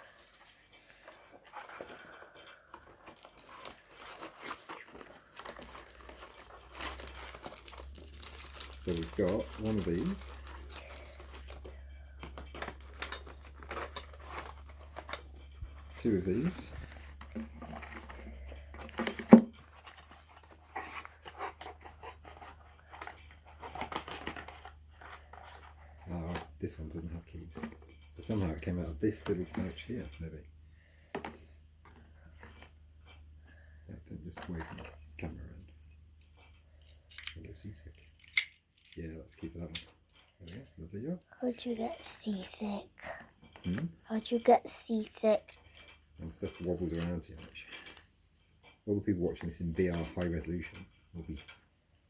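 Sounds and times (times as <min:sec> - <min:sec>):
packaging rustling: 0:00.1 - 0:26.0.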